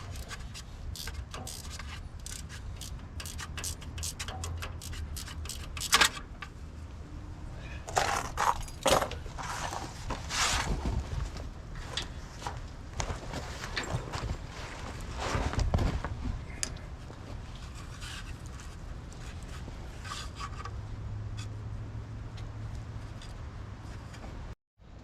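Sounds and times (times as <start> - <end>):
hand tools clicking on metal: 0.0 - 6.5
clattering and scraping: 0.0 - 6.6, 7.8 - 20.8.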